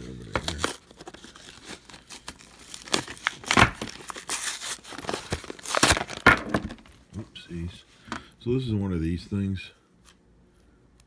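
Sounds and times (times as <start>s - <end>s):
plastic packaging crinkling and tearing: 0.1s - 7.0s.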